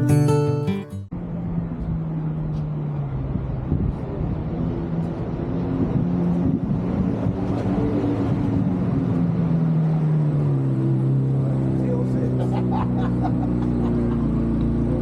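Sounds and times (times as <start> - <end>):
car engine running: 11.8 - 15.0.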